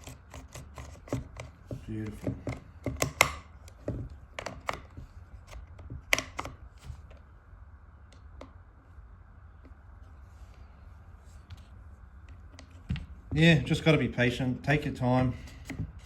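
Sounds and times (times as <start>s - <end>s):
sharp clicks of plastic parts: 0.0s - 7.2s.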